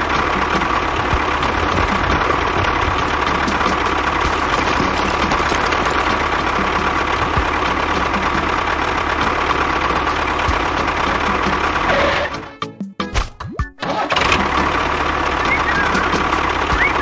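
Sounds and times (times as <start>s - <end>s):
engine running with high whine: 0.0s - 12.8s, 13.9s - 17.0s.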